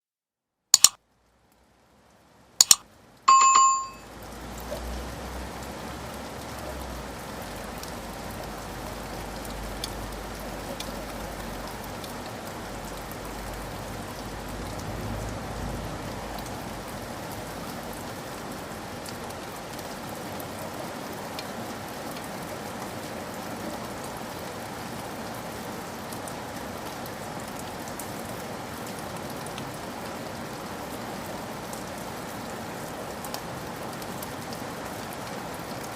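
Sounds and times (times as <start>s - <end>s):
sharp clicks: 0.8s - 1.0s, 2.6s - 4.0s
steady rain hiss: 1.1s - 3.3s, 4.0s - 35.9s
short ringing ding: 3.3s - 4.0s.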